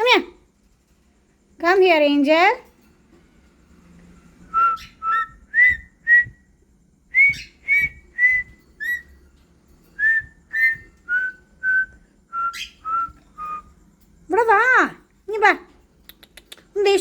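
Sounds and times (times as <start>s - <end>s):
whistled chirps: 4.5s - 6.5s, 7.1s - 9.2s, 10.0s - 13.7s.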